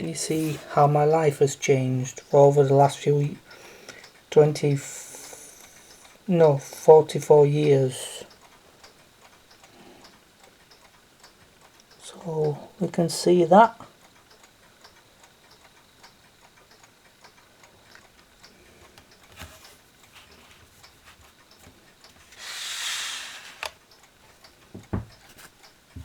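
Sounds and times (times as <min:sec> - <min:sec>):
mantel clock ticking: 0:00.0 - 0:26.0
low knock: 0:24.8 - 0:25.1.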